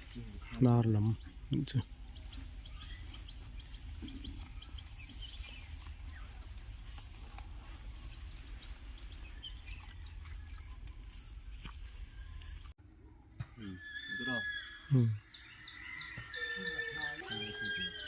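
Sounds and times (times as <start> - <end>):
bird chirps: 0.0 - 11.3, 12.2 - 18.0.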